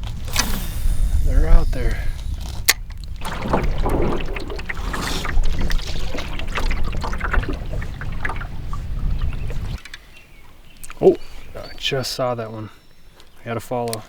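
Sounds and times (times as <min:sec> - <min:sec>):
paddle splashing water: 0:03.0 - 0:09.8
paddle knocks: 0:03.2 - 0:09.7.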